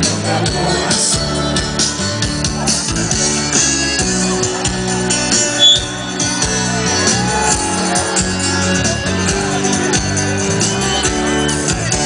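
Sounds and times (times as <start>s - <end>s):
live band playing: 0.0s - 12.0s
short high tone: 5.6s - 6.3s.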